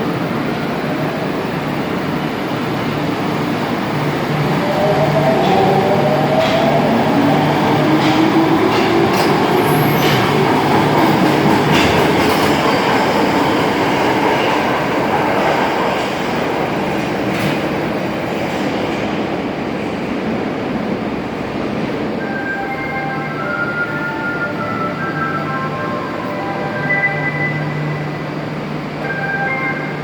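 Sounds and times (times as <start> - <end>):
subway train motors whining: 0.0 - 30.0
train wheels rumbling: 0.0 - 30.0
rail joint clicks: 3.5 - 20.3.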